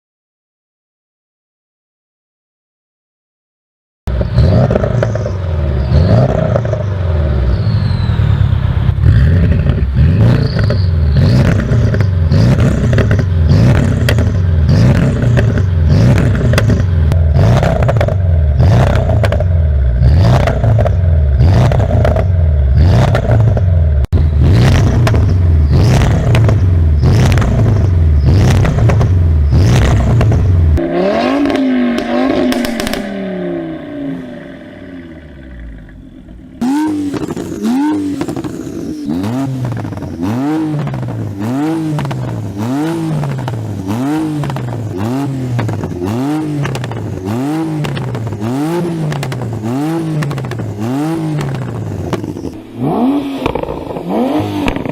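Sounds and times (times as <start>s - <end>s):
car engine revving: 4.1s - 54.9s
exhaust pops and crackles: 8.9s - 19.5s, 20.3s - 22.3s, 23.0s - 30.8s, 31.4s - 33.1s, 37.1s - 38.9s, 39.6s - 42.6s, 43.2s - 52.6s, 54.6s - 54.9s.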